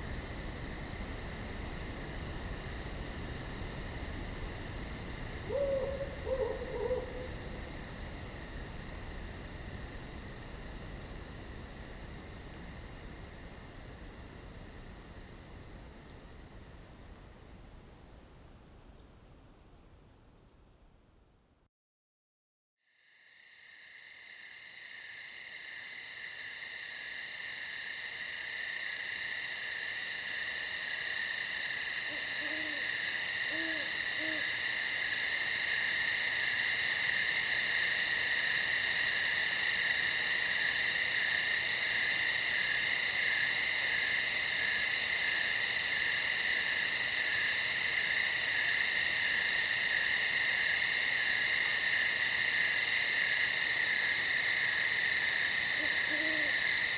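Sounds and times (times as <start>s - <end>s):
insects trilling: 0.0s - 10.5s, 25.4s - 56.9s
owl hooting: 5.5s - 7.5s, 32.1s - 34.6s, 55.8s - 56.6s.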